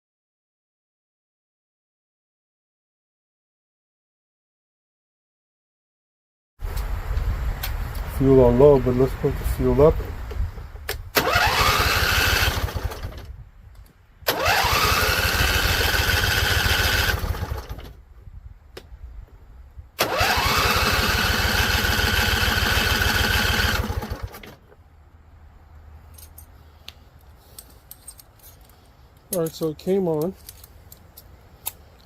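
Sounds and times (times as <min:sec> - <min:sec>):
electric starter cranking engine: 0:11.2 - 0:13.3, 0:14.3 - 0:18.0, 0:20.0 - 0:24.6.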